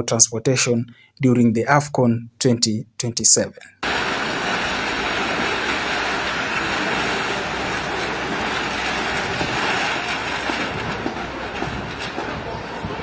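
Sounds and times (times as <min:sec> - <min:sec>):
train wheels rumbling and rattling: 0:03.8 - 0:13.0.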